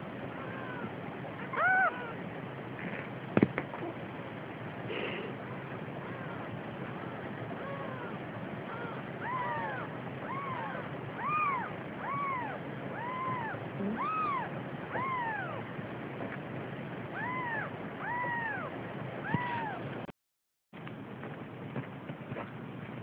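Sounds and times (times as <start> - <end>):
cat meowing: 1.5 - 2.2, 7.6 - 15.6.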